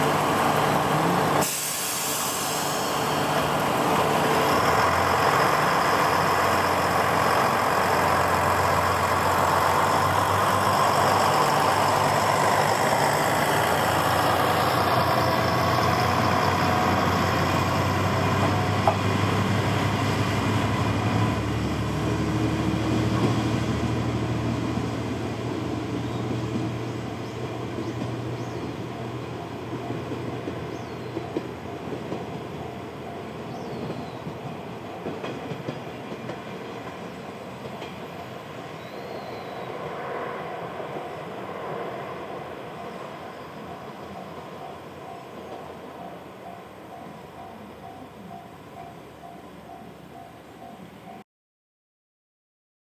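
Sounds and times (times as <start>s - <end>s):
diesel engine running under load: 0.0s - 24.8s
air hiss: 1.1s - 3.4s.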